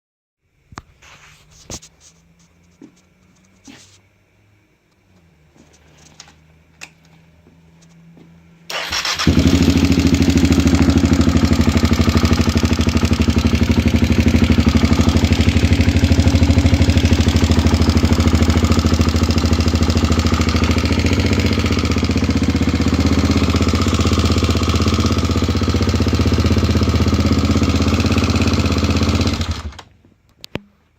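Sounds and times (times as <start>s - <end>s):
motorcycle engine idling with knock: 9.4s - 11.9s.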